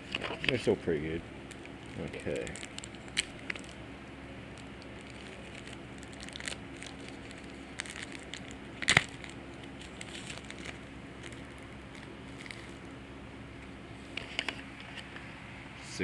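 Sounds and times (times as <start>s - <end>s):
foil wrapper crinkling: 1.4s - 3.8s, 4.5s - 13.0s.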